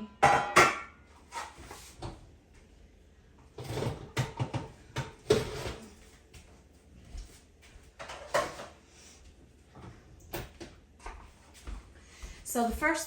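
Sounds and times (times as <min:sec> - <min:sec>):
baking pan clattering knocks: 0:00.2 - 0:00.9.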